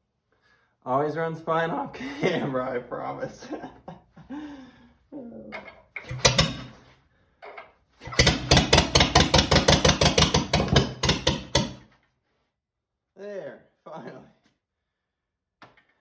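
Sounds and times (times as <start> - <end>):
engine turning over and firing: 6.0 - 6.8, 8.0 - 11.8.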